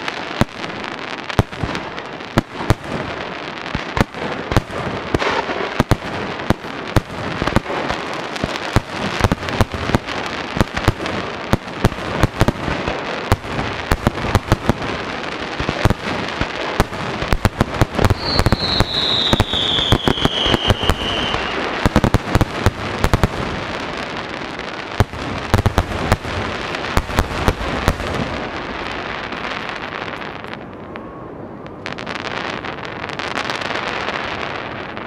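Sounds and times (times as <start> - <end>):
fireworks crackle: 0.0 - 35.0
descending whistle: 18.2 - 21.5.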